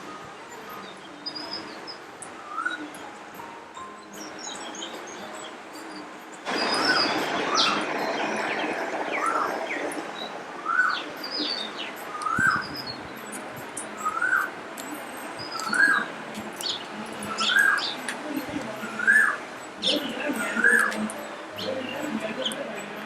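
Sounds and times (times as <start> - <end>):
background hiss: 0.0 - 23.0
bird rising-and-falling call: 6.5 - 11.6
high bird chirps: 6.5 - 14.5.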